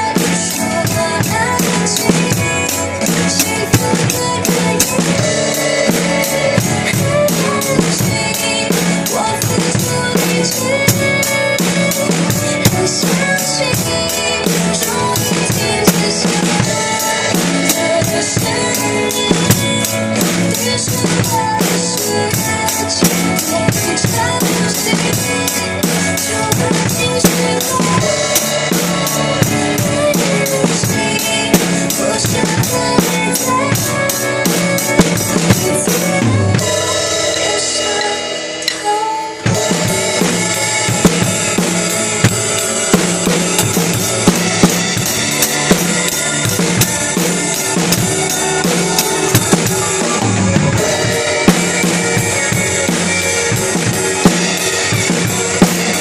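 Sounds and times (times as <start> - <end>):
drum kit playing: 0.0 - 56.0
pop ballad backing track: 0.0 - 56.0.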